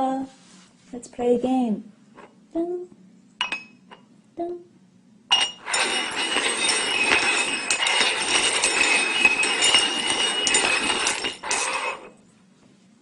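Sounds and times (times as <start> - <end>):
cups sliding on a table: 5.6 - 12.2.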